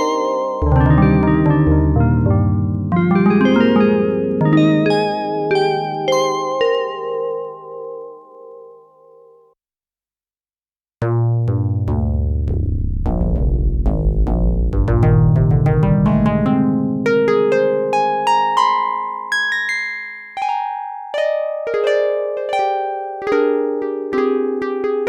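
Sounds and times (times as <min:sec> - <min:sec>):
synthesizer notes: 0:00.0 - 0:08.0, 0:11.0 - 0:17.3
deep synthesizer bass notes: 0:00.6 - 0:04.8, 0:11.0 - 0:16.6.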